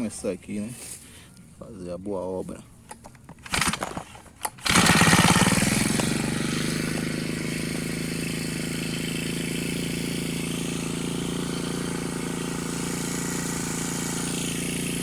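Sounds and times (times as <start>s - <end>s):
brushcutter engine idling: 3.2s - 15.0s.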